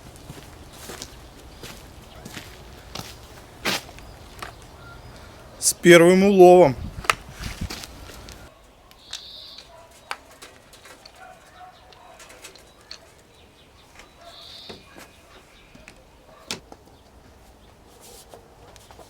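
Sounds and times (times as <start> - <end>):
bird high calls: 0.7 - 5.6, 7.9 - 17.7
faint lower bird calls: 0.7 - 5.6, 8.0 - 18.0.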